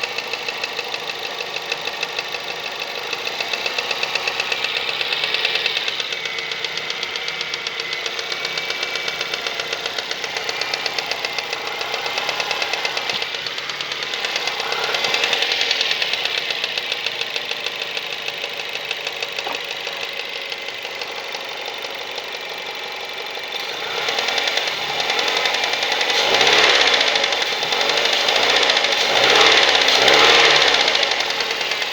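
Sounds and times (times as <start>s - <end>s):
fast ticking knock: 0.0s - 22.6s
car engine running: 0.0s - 31.9s.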